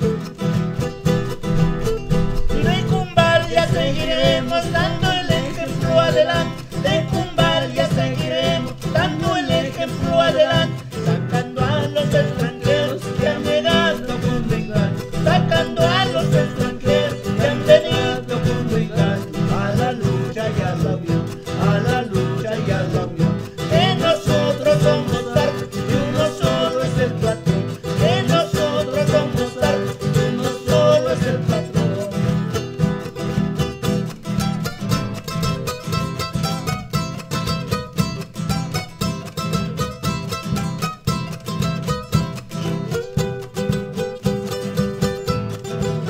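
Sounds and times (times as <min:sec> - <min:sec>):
acoustic guitars strumming: 0:00.0 - 0:46.0
plucked melody: 0:00.0 - 0:46.0.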